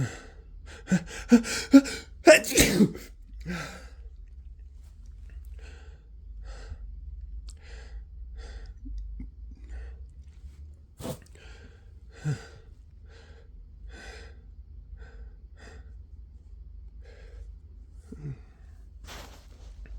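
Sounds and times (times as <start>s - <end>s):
voiced gasps: 0.0s - 4.0s
quick noisy breathing: 0.8s - 3.8s, 11.0s - 12.6s, 19.0s - 19.9s.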